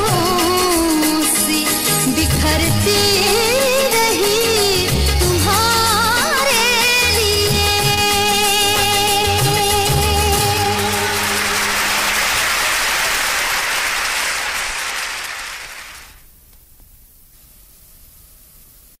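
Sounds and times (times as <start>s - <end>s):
audience applauding: 10.2s - 16.2s.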